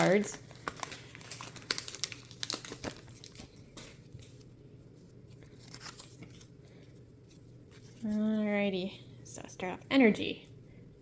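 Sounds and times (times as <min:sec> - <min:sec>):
foil wrapper crinkling: 0:00.0 - 0:04.4.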